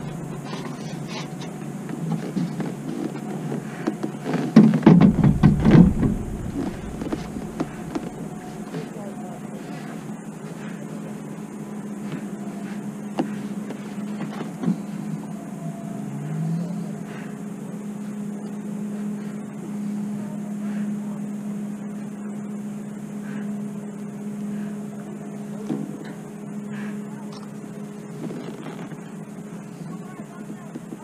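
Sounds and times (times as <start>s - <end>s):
steady motor hum: 0.0s - 31.0s
sharp knocks: 4.6s - 8.8s.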